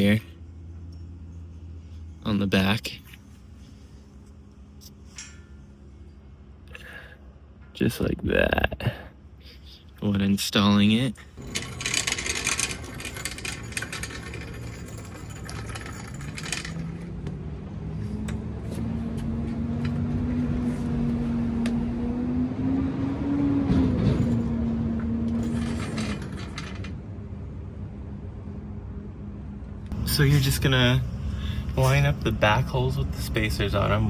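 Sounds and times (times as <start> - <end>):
steel plate clattering and rattling: 11.4 - 17.2, 25.4 - 27.0
engine hum rising in pitch: 16.2 - 26.0, 27.0 - 34.0.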